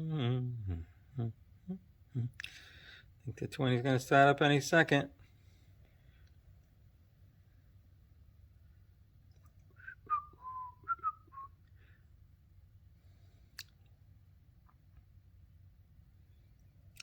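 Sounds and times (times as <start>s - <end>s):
person whistling a tune: 9.8s - 11.5s.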